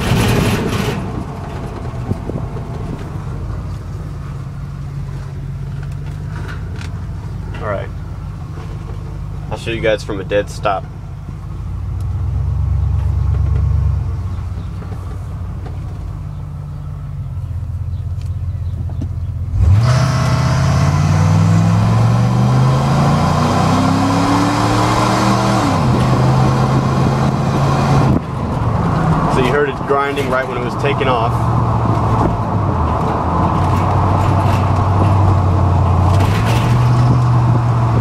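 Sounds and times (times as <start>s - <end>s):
pickup engine idling and accelerating: 0.0s - 38.0s
harsh metallic grinding: 19.6s - 38.0s.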